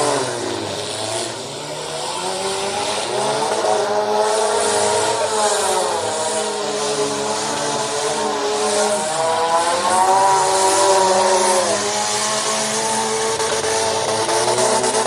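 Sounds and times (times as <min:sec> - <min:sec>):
car engines revving: 0:00.0 - 0:15.0.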